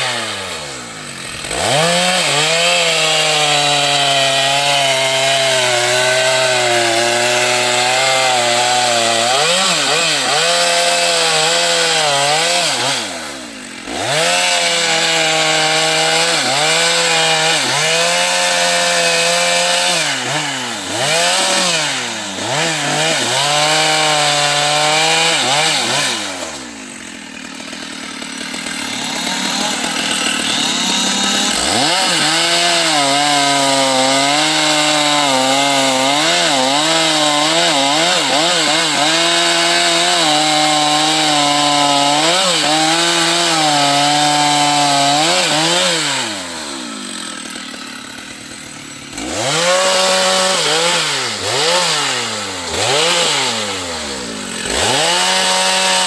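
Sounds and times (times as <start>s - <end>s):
chainsaw cutting wood: 0.0s - 56.0s.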